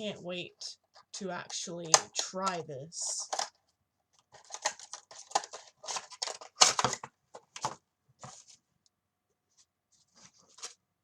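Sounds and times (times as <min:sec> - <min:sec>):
plastic packaging crackling: 0:04.3 - 0:07.1.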